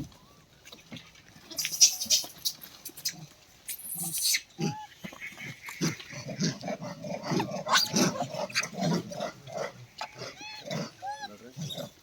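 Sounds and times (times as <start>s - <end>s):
monkeys growling and grunting: 3.8s - 12.0s.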